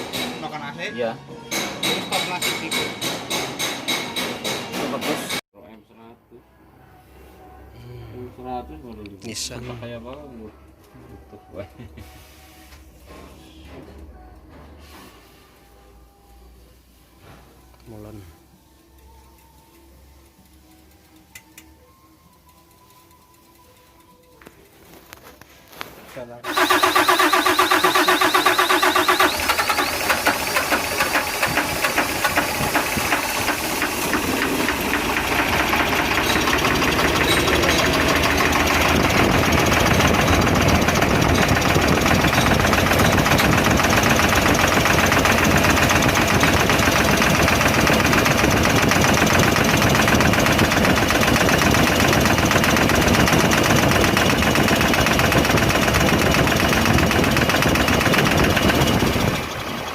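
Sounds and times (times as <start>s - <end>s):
diesel engine knocking clatter: 26.5s - 59.9s.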